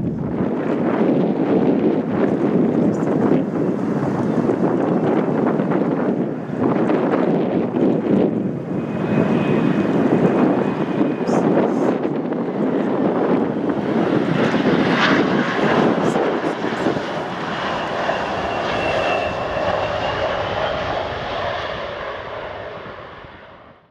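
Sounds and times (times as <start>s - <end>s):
jet engines running: 0.0s - 23.8s.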